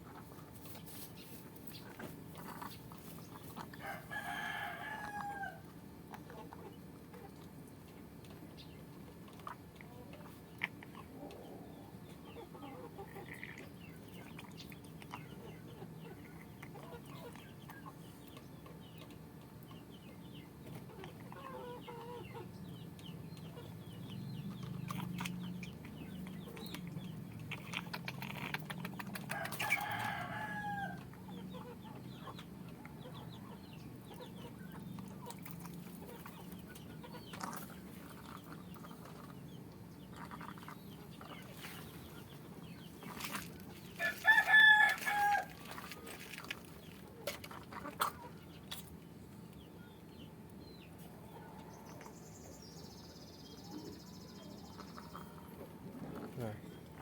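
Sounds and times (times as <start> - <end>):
chickens clucking: 0.0 - 57.0
rooster crowing: 3.8 - 5.6, 29.3 - 31.0, 44.0 - 45.7.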